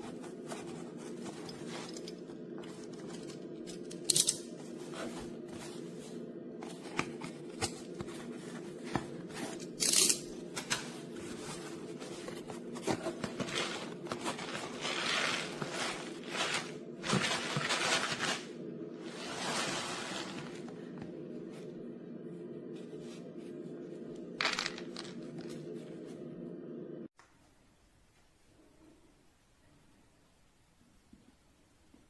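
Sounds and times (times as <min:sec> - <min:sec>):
packaging rustling and crinkling: 0:10.4 - 0:21.0.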